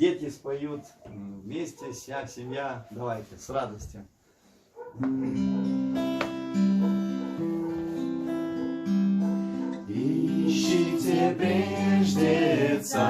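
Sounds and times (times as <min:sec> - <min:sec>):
instrumental hymn chords: 0:05.0 - 0:13.0.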